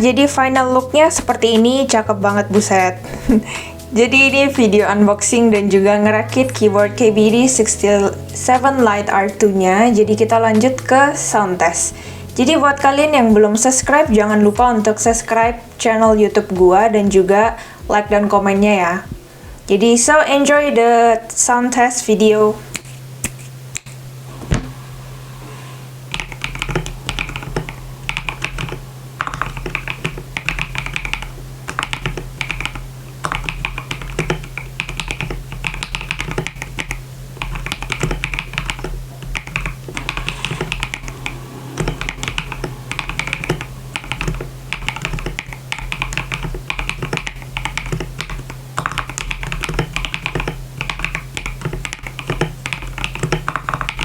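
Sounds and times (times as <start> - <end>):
mechanical keyboard typing: 26.1 - 54.0.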